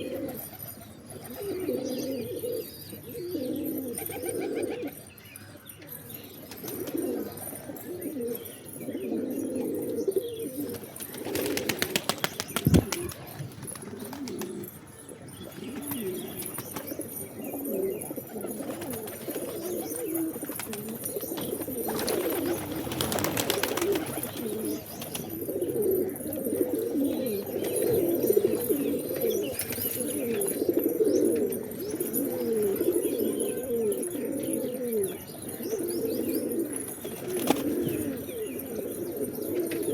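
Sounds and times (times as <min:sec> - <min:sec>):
pigeons cooing: 0:00.0 - 0:39.9
rapid wing flapping: 0:11.3 - 0:14.5, 0:22.0 - 0:24.3.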